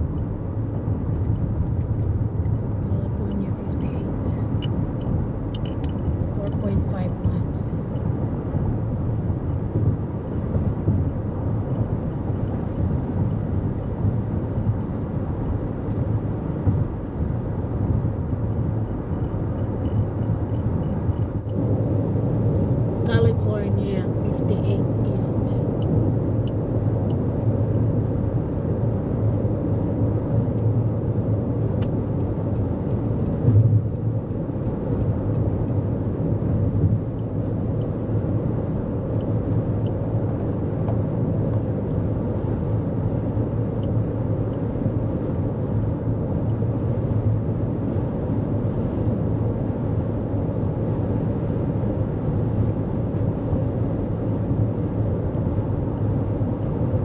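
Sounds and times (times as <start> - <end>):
road and tyre rumble: 0.0 - 57.0.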